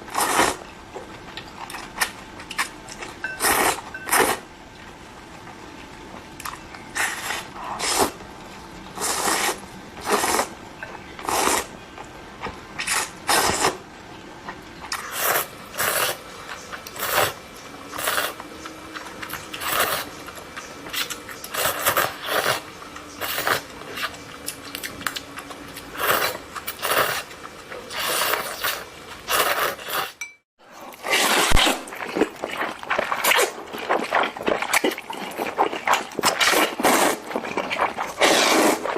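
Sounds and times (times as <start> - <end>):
person chewing: 6.4 - 8.2, 31.1 - 38.9
person slurping noodles: 7.0 - 8.2, 9.0 - 10.5, 11.2 - 11.7, 12.8 - 13.8, 17.0 - 18.4, 25.9 - 27.3, 27.9 - 30.2, 31.0 - 38.9.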